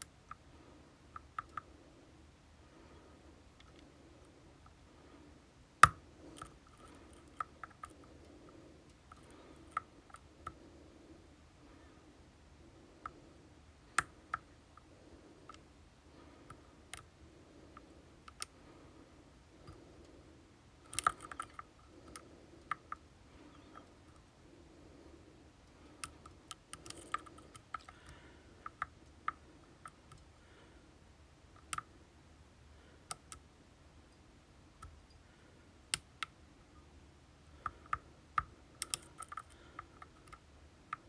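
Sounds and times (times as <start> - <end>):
lock picks clicking in a lock: 26.0 - 28.1, 38.8 - 40.5.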